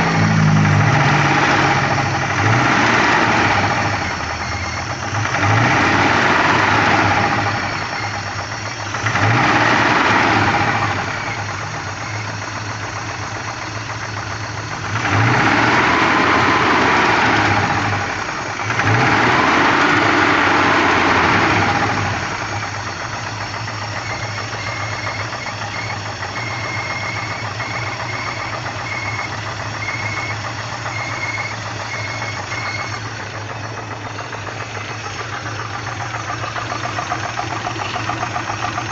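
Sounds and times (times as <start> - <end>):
car engine revving and idling: 0.0 - 38.9.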